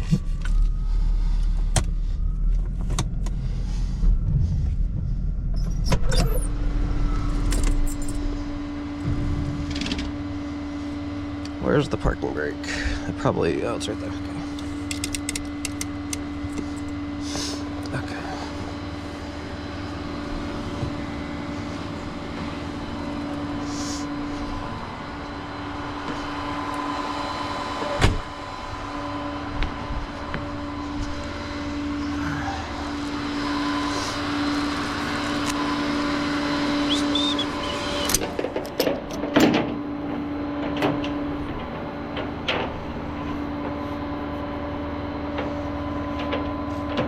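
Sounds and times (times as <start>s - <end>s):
vehicle machinery humming: 0.0s - 47.0s
clunks and clicks: 37.7s - 42.9s.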